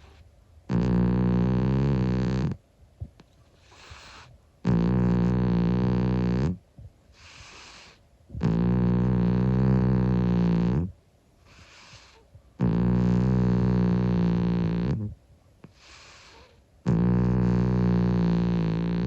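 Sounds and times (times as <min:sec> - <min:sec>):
cat snoring: 0:00.0 - 0:02.6, 0:03.6 - 0:06.6, 0:07.2 - 0:19.0
cat breathing softly: 0:03.6 - 0:04.4, 0:07.1 - 0:08.0, 0:11.4 - 0:12.3, 0:15.6 - 0:16.6.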